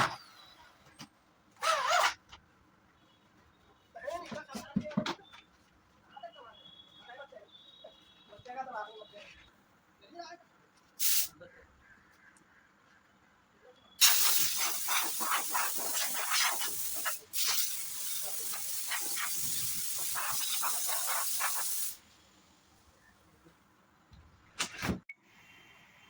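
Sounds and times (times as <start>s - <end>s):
air gun hissing: 11.0s - 11.3s, 14.0s - 22.1s.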